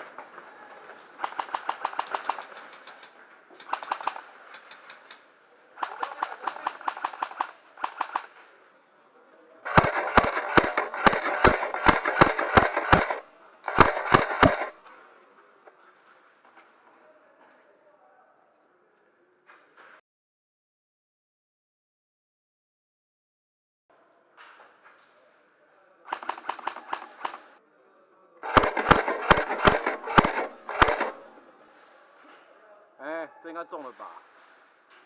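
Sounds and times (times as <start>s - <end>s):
airsoft guns firing bursts: 0.0s - 5.2s, 5.8s - 8.5s, 9.6s - 14.8s, 26.1s - 27.6s, 28.4s - 31.4s.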